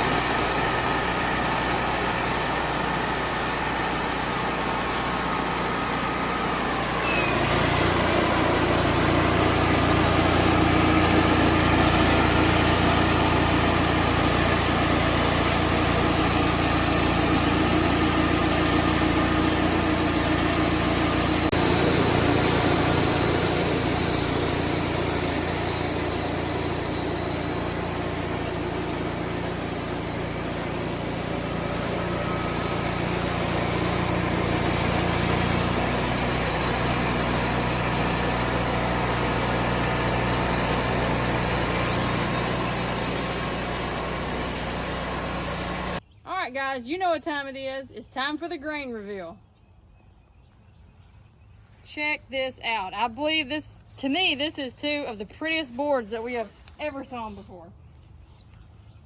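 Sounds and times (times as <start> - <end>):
band sawmill cutting a log: 0.0 - 46.0.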